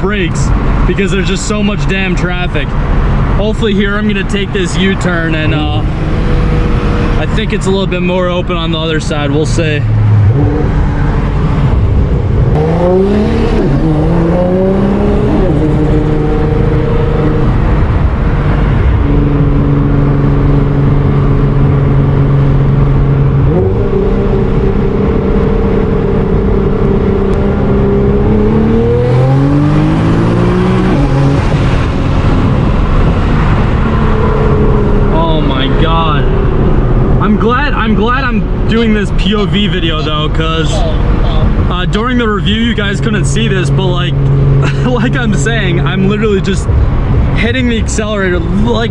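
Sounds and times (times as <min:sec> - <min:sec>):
turbo car engine revving: 0:00.0 - 0:48.9.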